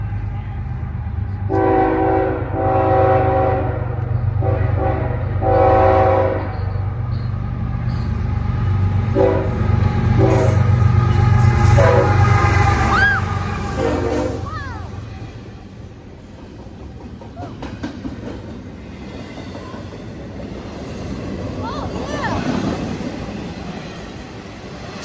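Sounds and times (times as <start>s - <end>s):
low rumble of train: 0.0s - 25.0s
locomotive air horn blasts: 1.5s - 6.6s, 9.1s - 15.3s.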